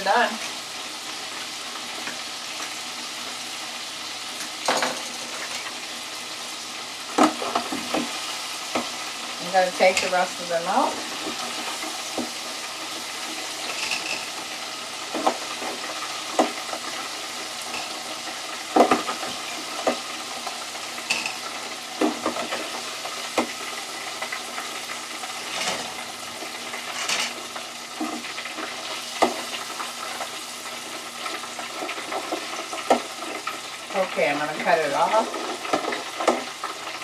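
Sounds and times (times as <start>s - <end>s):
oil sizzling in deep fryer: 0.0s - 37.0s
utensil clinking against fryer: 4.4s - 5.8s, 9.8s - 12.3s, 13.6s - 14.4s, 17.6s - 18.1s, 21.0s - 22.8s, 25.4s - 26.1s, 26.8s - 29.6s.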